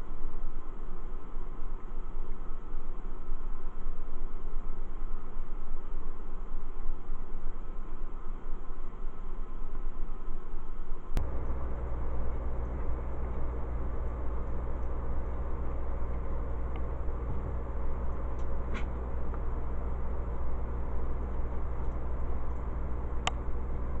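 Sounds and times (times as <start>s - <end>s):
low hum: 0.0s - 24.0s.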